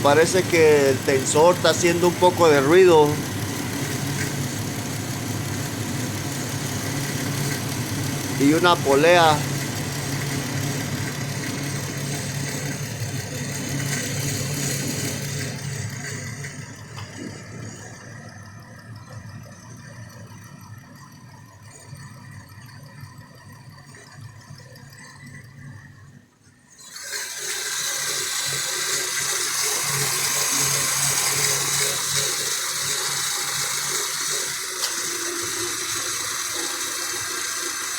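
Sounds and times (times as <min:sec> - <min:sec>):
car engine idling: 0:00.0 - 0:13.5
belt drive whirring: 0:00.0 - 0:18.1, 0:26.8 - 0:37.9.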